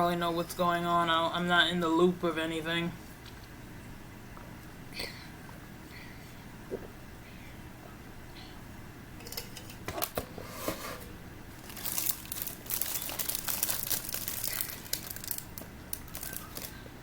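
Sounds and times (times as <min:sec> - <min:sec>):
plastic wrapper crinkling: 0:11.6 - 0:16.9.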